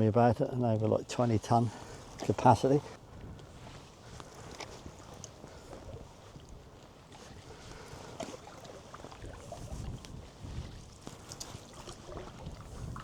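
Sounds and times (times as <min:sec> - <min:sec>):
canoe paddle strokes in water: 0:01.2 - 0:13.0
wind rumble on microphone: 0:02.9 - 0:13.0.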